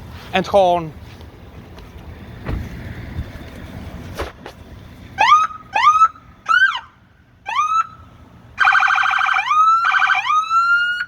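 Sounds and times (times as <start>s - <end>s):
police siren chirps: 8.6s - 11.0s.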